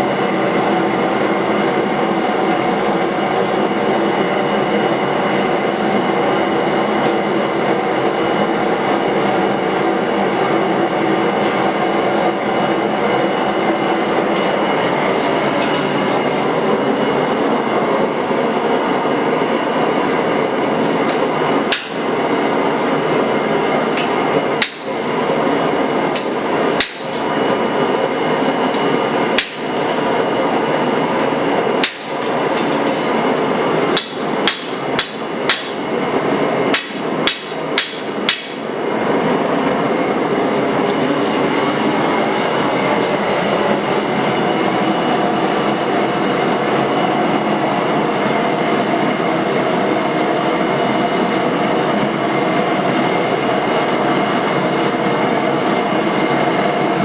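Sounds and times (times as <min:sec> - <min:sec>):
forging hammer striking steel: 0:21.1 - 0:22.2, 0:23.9 - 0:25.2, 0:26.1 - 0:27.6, 0:28.7 - 0:30.2, 0:31.2 - 0:33.3, 0:33.9 - 0:38.7.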